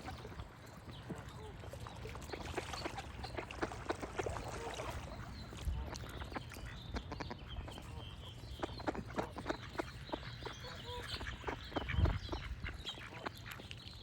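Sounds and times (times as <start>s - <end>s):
ducks splashing and paddling: 0.0s - 14.0s
small birds chirping: 5.3s - 14.0s.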